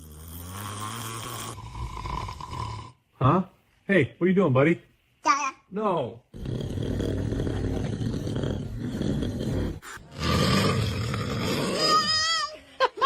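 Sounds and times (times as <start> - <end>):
man snoring loudly: 0.0 - 3.0, 6.3 - 12.2.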